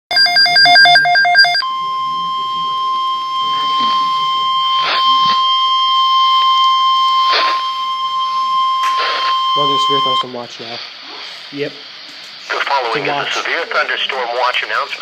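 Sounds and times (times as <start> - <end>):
alternating electronic beeps: 0.1 - 10.4
steady alarm tone: 0.1 - 11.0
static crackles: 3.4 - 7.8, 8.8 - 15.0.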